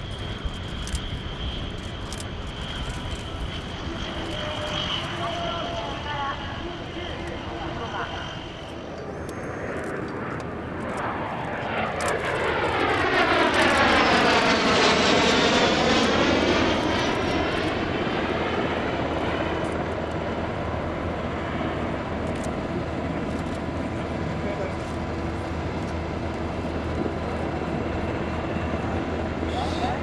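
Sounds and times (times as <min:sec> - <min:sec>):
airplane flying past: 0:00.0 - 0:30.0.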